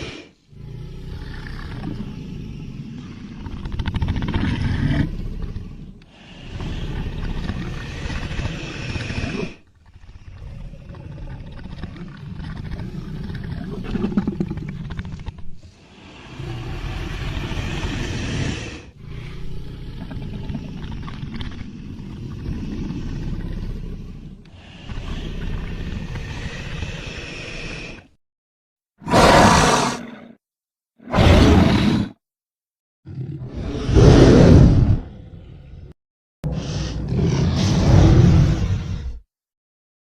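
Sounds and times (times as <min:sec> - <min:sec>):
creature growls: 0:00.0 - 0:28.2, 0:29.0 - 0:30.4, 0:31.0 - 0:32.2, 0:33.1 - 0:39.3.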